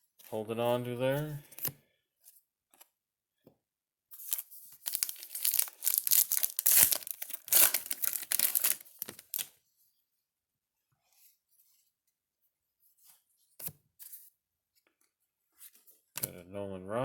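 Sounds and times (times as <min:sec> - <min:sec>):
plastic wrapper tearing and crinkling: 0:04.2 - 0:09.5.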